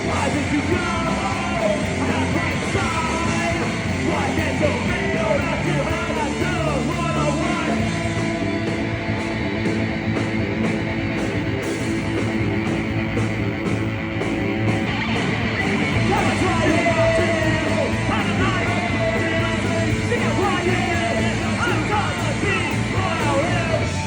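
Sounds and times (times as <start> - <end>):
live rock band playing: 0.0 - 24.0
person singing: 15.8 - 24.0.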